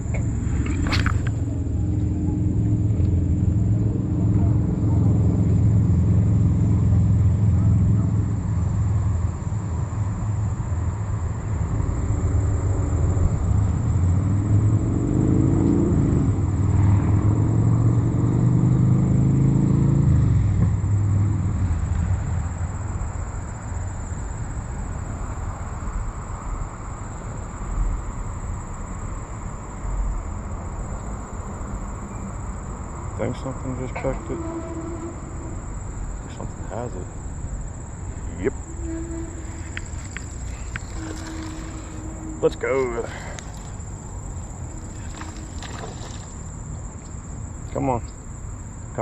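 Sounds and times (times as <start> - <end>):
vehicle engine rumbling: 0.0 - 17.9, 28.6 - 49.0.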